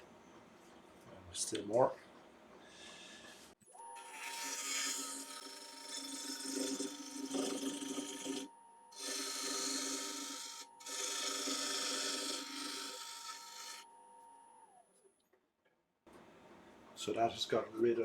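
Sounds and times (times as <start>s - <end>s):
wood lathe whining: 3.7s - 14.8s
gouge scraping wood: 4.0s - 13.9s.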